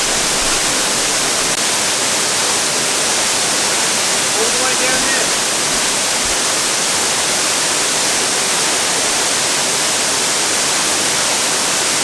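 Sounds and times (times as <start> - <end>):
waterfall rushing: 0.0 - 12.0.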